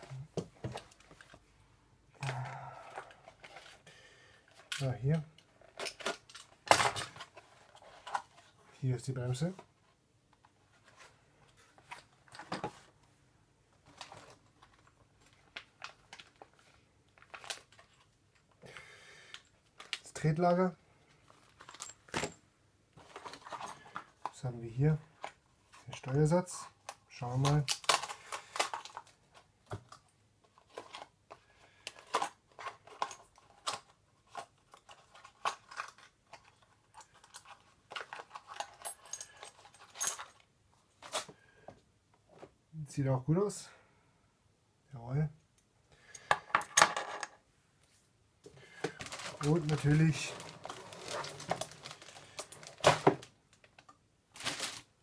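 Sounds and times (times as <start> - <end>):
packaging rustling and clicking: 5.4 - 8.5, 13.8 - 18.4, 26.8 - 41.4, 48.8 - 55.0.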